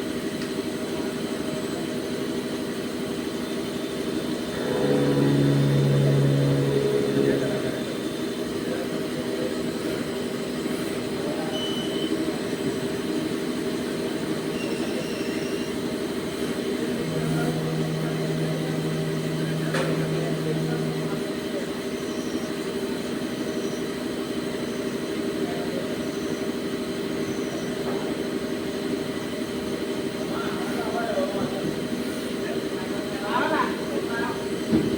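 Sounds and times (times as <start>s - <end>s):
lathe mechanical drone: 0.7s - 34.2s
lower steady hum: 4.5s - 8.5s, 16.8s - 22.0s.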